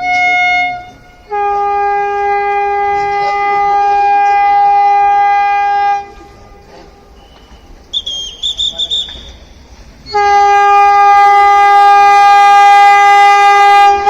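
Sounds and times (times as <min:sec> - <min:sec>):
train horn blasts: 0:00.0 - 0:06.7, 0:10.0 - 0:14.0.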